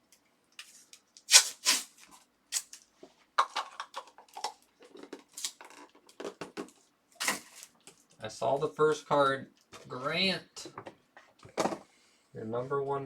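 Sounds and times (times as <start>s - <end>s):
foil wrapper crinkling and tearing: 0.6s - 2.8s, 4.4s - 6.2s, 7.2s - 8.0s.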